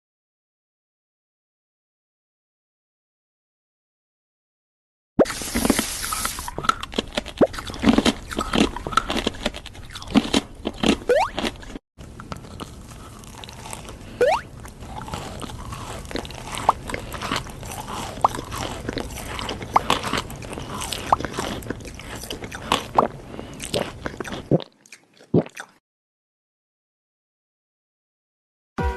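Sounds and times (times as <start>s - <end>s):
crunchy food being chewed: 5.2s - 25.8s.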